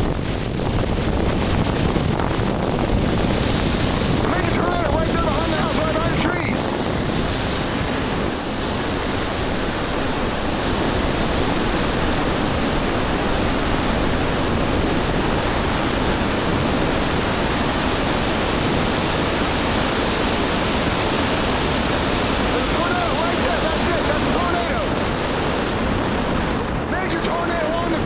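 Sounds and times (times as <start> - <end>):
wind rushing over microphone: 0.0 - 28.0.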